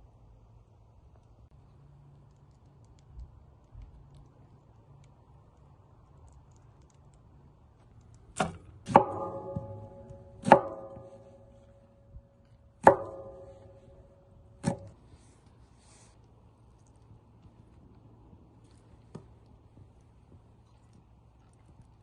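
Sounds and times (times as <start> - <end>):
knocks on metal with ringing: 8.9 - 11.4, 12.8 - 13.8.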